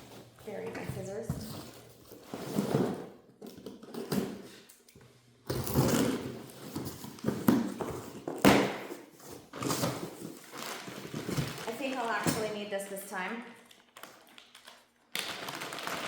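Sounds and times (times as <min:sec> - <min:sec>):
cardboard rustling: 0:05.6 - 0:12.6.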